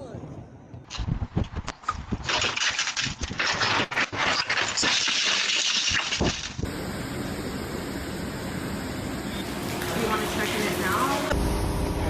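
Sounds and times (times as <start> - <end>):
wind and rain rushing: 0.8 - 4.5.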